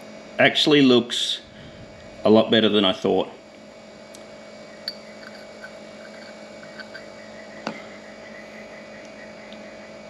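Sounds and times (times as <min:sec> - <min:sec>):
electrical hum: 0:00.0 - 0:10.0
small parts clicking and tapping: 0:04.8 - 0:07.8.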